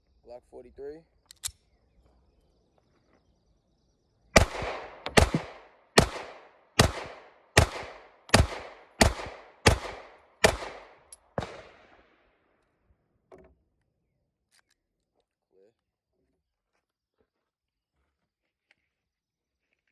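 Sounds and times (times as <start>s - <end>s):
pistol shots echoing: 4.4s - 12.1s.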